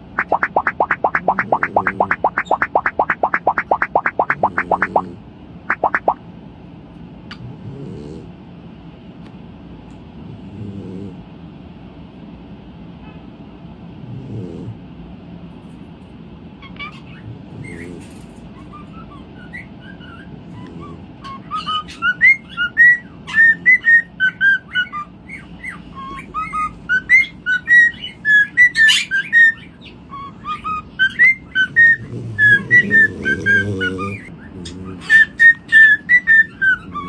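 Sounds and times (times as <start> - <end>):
bird chirping: 0.0 - 5.0, 5.7 - 6.2, 21.2 - 37.0.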